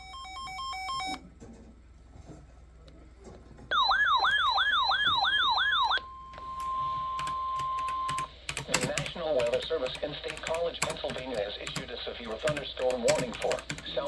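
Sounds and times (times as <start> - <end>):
steady alarm tone: 3.7 - 8.3.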